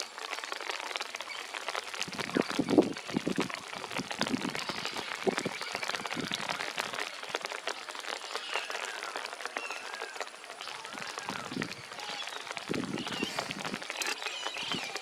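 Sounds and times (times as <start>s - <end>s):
flock of birds chattering: 0.0s - 15.0s
arching bird calls: 8.2s - 15.0s.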